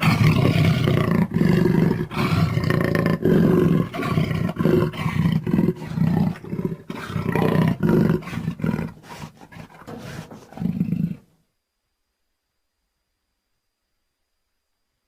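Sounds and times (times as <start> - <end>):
jaguar roaring: 0.0 - 11.3.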